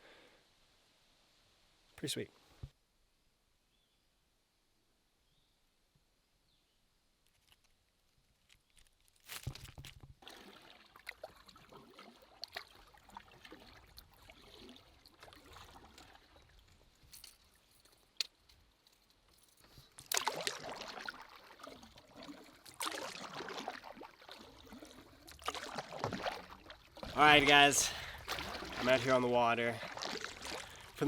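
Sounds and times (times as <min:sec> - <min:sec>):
paddle strokes in water: 0:10.2 - 0:18.1, 0:19.4 - 0:31.0
water trickling and dripping: 0:10.2 - 0:31.0.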